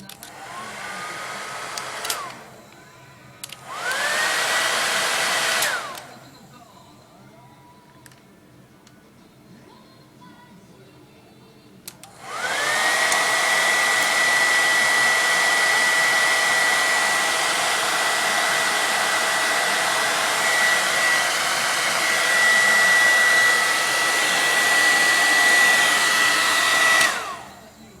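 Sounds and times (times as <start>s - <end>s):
hair dryer motor whine: 0.0s - 6.3s, 12.0s - 28.0s.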